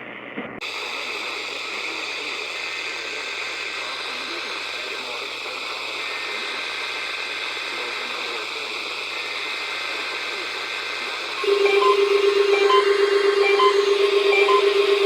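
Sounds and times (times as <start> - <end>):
radio static hiss: 0.0 - 15.0
short high beeps: 11.4 - 15.0
steady low tone: 11.4 - 15.0.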